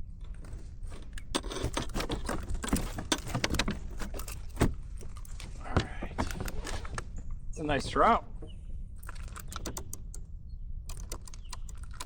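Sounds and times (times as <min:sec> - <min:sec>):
clicks and rattles on plastic kayak: 0:00.2 - 0:07.2.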